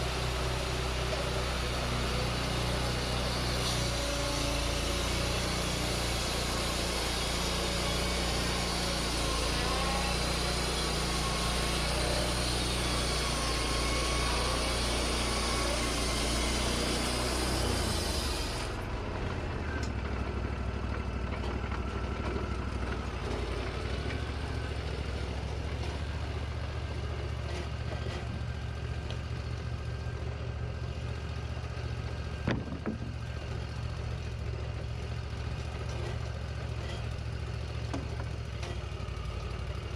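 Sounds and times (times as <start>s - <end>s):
sawmill engine running: 0.0s - 39.9s
saw blade hissing through log: 3.5s - 18.8s.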